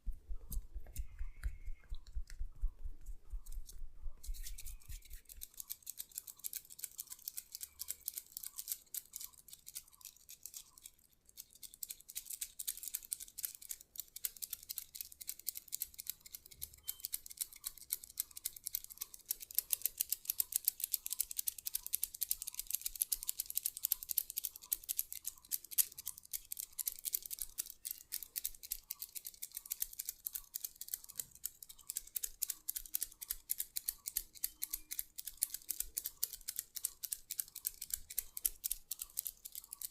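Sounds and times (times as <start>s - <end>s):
massage tool scratching on skin: 3.1s - 8.7s.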